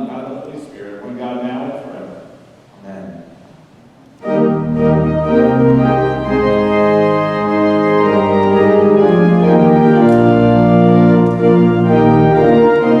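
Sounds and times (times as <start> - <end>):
organ playing held chords: 4.2 - 13.0.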